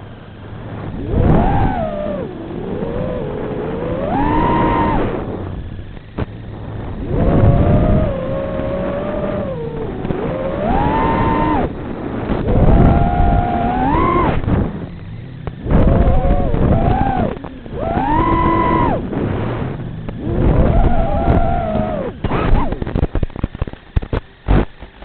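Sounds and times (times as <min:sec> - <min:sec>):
quadcopter motors whining: 0:00.0 - 0:23.4
low rumble: 0:00.0 - 0:24.2.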